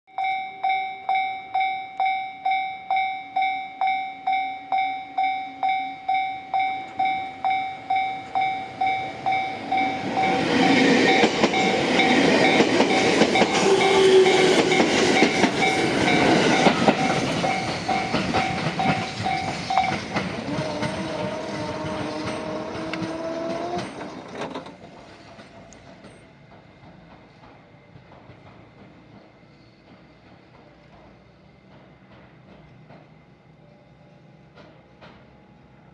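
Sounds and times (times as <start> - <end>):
level crossing warning bell: 0.1 - 24.3
train wheels clacking over rail joints: 6.9 - 33.6, 34.4 - 35.9.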